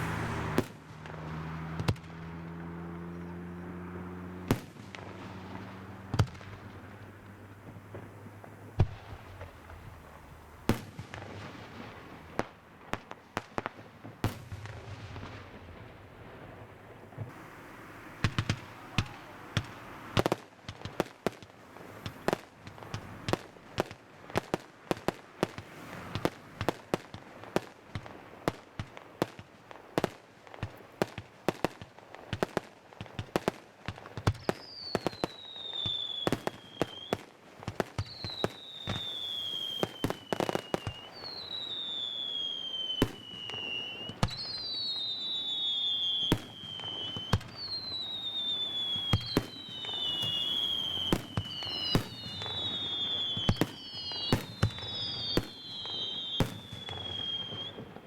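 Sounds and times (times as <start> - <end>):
rapid firework bangs: 0.0 - 58.0
firework shells bursting: 34.4 - 58.0.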